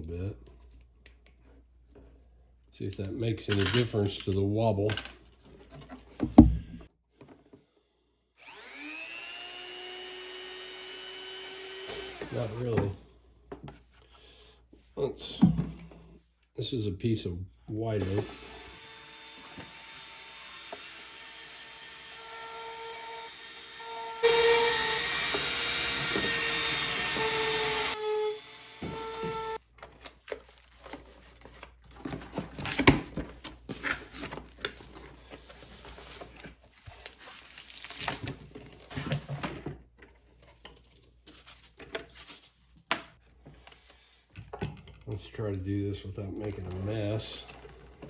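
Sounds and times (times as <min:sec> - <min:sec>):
handling clicks and knocks: 0:03.0 - 0:06.4
rotary tool motor whine: 0:08.4 - 0:12.6, 0:18.1 - 0:29.6
rotary tool grinding wood: 0:08.4 - 0:12.8, 0:18.0 - 0:29.6.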